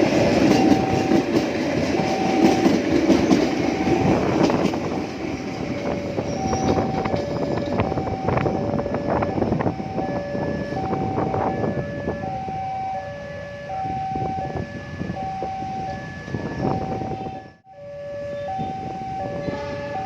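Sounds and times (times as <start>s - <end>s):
train rattling over rails: 0.0s - 12.5s, 18.3s - 20.0s
level crossing alarm two tones: 0.4s - 4.4s, 5.8s - 20.0s.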